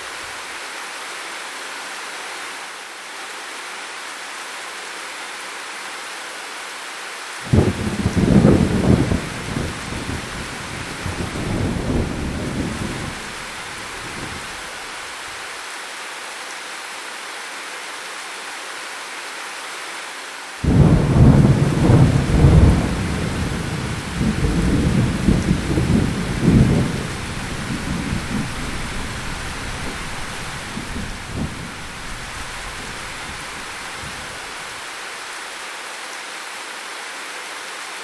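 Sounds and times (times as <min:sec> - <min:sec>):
steady rain: 0:00.0 - 0:38.0
thunder rolling: 0:07.5 - 0:14.8, 0:20.6 - 0:34.6.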